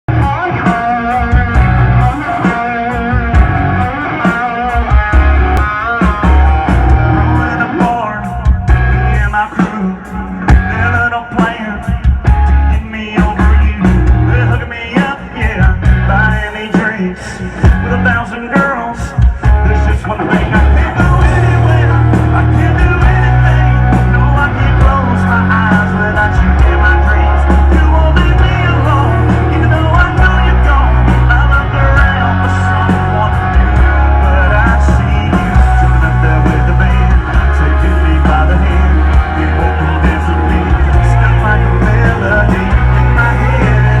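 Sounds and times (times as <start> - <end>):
live rock band: 0.0 - 44.0
person singing: 0.0 - 44.0.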